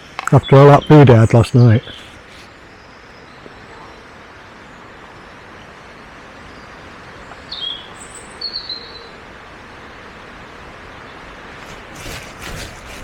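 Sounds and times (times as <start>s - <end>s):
outdoor background hiss: 0.0s - 13.0s
bird chirps: 6.4s - 9.2s.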